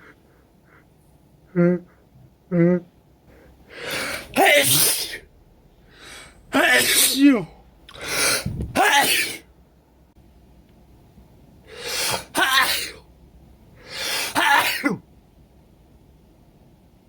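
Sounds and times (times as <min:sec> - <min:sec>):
sharp gasping in-breath: 0:03.3 - 0:04.4, 0:07.9 - 0:08.6
man sneezing: 0:03.8 - 0:05.3, 0:06.5 - 0:09.5, 0:11.8 - 0:13.1, 0:13.9 - 0:15.0.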